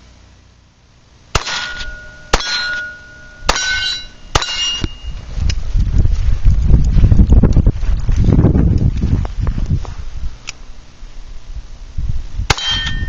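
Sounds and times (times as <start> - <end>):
metallic clangs ringing: 1.4 - 5.2, 12.5 - 13.0
wind noise on microphone: 3.5 - 13.0.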